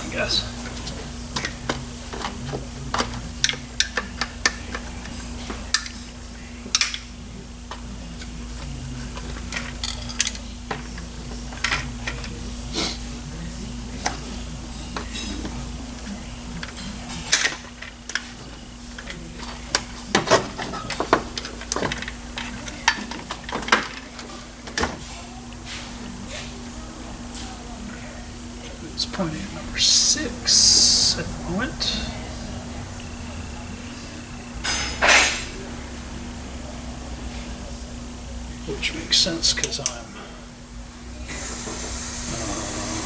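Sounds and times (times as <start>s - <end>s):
steady low hum: 0.0s - 43.0s
metal tools clinking: 9.0s - 12.4s.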